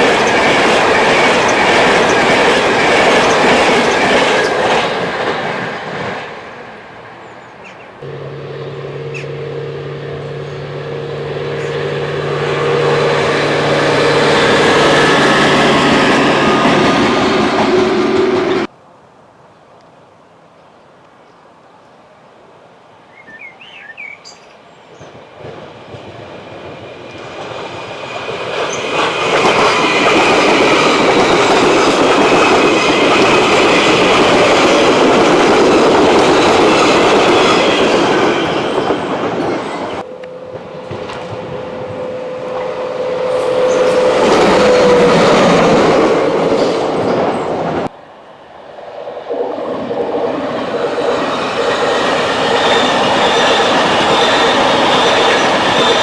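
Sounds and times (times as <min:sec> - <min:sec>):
trains passing: 0:00.0 - 0:18.8, 0:24.8 - 0:56.0
steady whine: 0:40.0 - 0:45.5.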